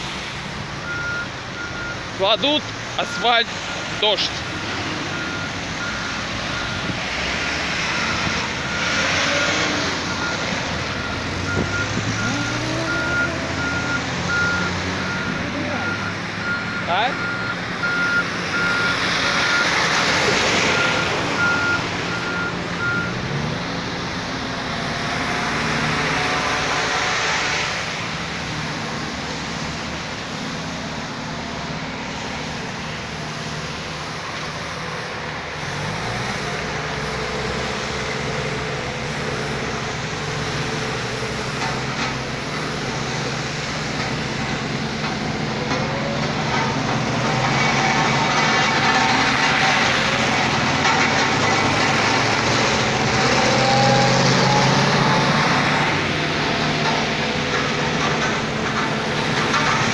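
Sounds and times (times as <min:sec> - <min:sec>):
diesel engines of paving machinery: 0:00.0 - 0:59.9
reversing alarm beeping: 0:00.8 - 0:07.1, 0:07.8 - 0:19.8, 0:20.6 - 0:23.2.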